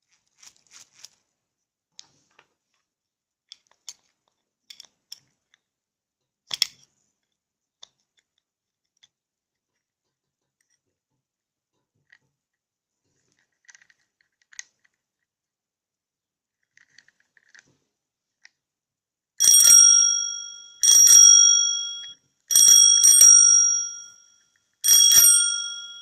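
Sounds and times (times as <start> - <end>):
bicycle bell ringing: 19.4 - 24.2, 24.8 - 26.0.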